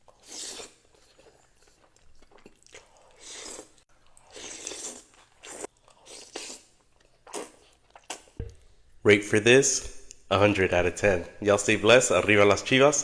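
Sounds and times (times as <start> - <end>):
crunchy chewing: 0.0 - 8.4.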